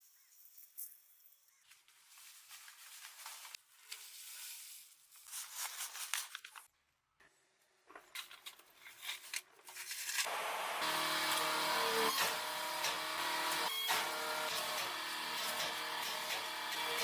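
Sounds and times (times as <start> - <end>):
crinkling crackling rustle: 1.6 - 6.7.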